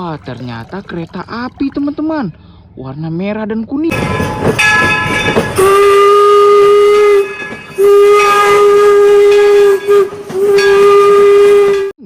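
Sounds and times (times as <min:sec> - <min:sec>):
steam train whistle blasts: 0:05.6 - 0:12.0.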